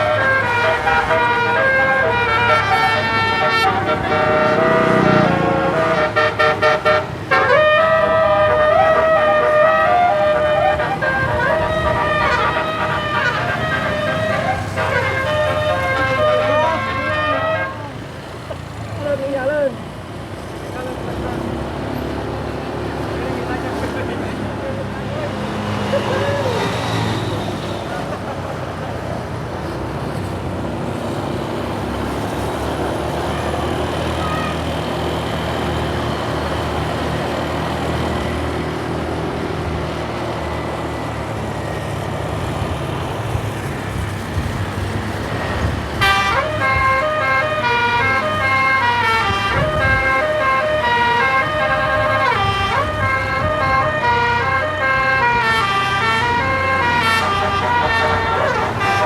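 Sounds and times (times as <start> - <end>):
multi-trumpet air horn melody: 0.0 - 18.0, 46.0 - 59.0
road noise: 0.0 - 59.0
vehicle engine running: 0.0 - 59.0.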